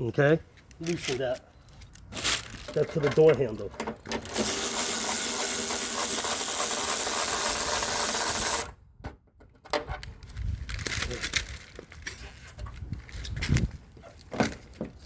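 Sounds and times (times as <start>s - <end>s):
parts clicking and knocking: 2.7s - 12.2s
power tool running: 4.2s - 8.8s.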